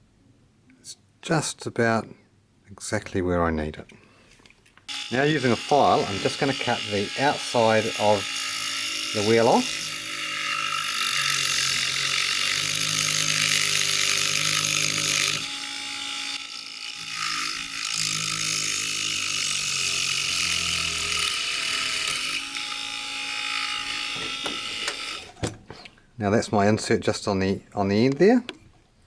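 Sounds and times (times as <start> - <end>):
file scraping turning plastic: 4.9 - 18.8
small electric motor spinning: 4.9 - 25.4.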